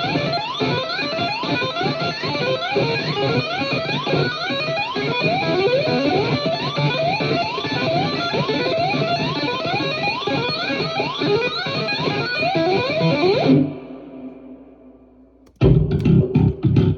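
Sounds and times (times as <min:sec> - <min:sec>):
guitar pitch slides: 0:15.5 - 0:16.9.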